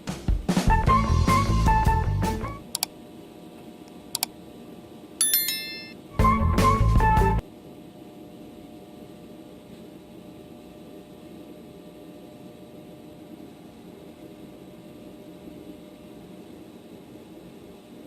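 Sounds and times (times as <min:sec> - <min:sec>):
low background hum and hiss: 0:01.6 - 0:18.0.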